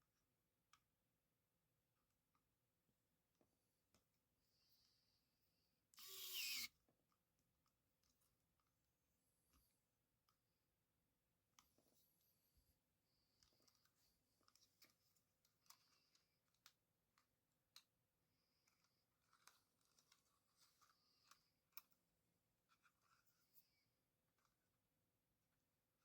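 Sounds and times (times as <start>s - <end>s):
faint clicks of small tools: 11.5s - 12.1s, 13.1s - 24.6s.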